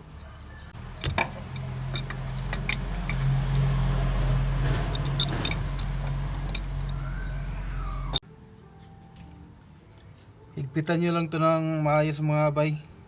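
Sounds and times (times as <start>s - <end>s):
low mechanical hum: 0.0s - 10.0s
metal tools clicking and clinking: 0.1s - 3.4s, 4.6s - 7.0s.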